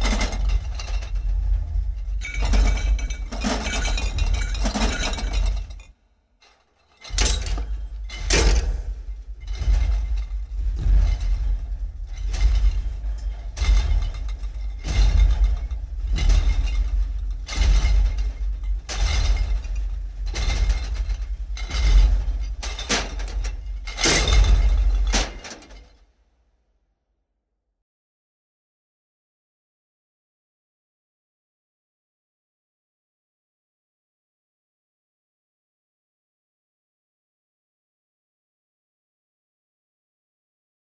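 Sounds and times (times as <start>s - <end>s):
deep rumble: 0.0s - 5.9s, 7.0s - 25.8s
giant monster footsteps stomping: 7.1s - 25.4s.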